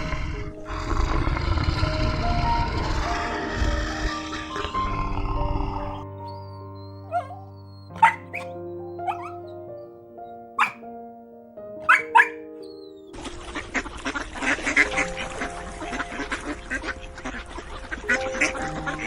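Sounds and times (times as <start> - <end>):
soft piano music: 0.0 - 19.0
animal calls: 6.2 - 9.6, 10.6 - 10.8, 11.8 - 12.9.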